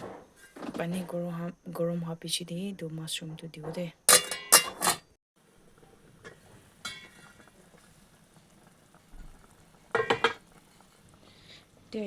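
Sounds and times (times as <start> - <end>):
faint steady hiss: 0.5 - 12.0
metal utensils clinking on a pot: 4.1 - 5.1, 6.3 - 7.5, 9.9 - 10.4.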